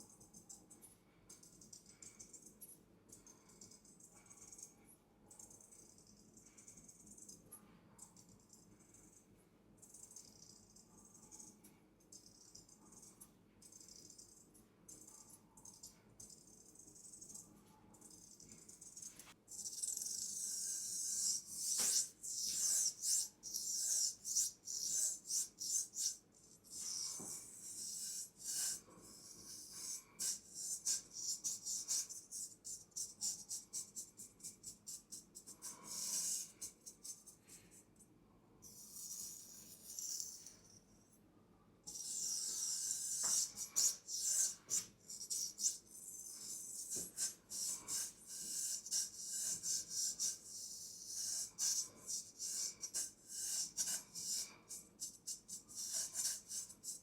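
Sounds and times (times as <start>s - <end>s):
straight razor scraping: 19.0s - 37.4s, 41.9s - 57.0s.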